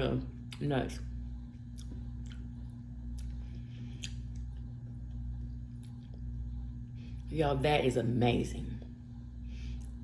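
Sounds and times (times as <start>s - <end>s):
steady low hum: 0.0s - 10.0s
person chewing ice cream: 1.4s - 6.7s.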